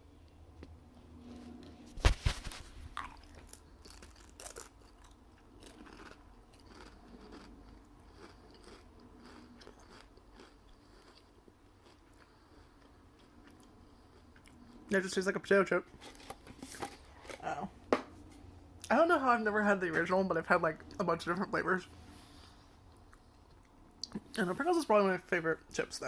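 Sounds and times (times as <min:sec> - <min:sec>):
crunchy chewing: 0:01.5 - 0:14.9
biting into a potato crisp: 0:02.0 - 0:14.9.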